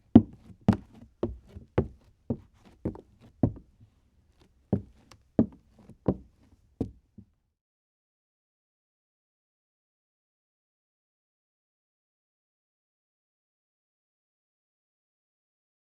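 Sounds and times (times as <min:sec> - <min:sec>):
sneaker footsteps on wooden floor: 0:00.2 - 0:03.7, 0:04.8 - 0:07.0.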